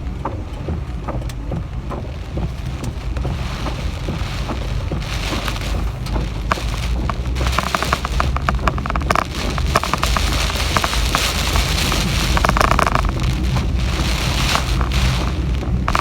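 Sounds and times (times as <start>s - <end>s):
rain spattering: 0.0s - 16.0s
wind rumble on microphone: 0.0s - 16.0s.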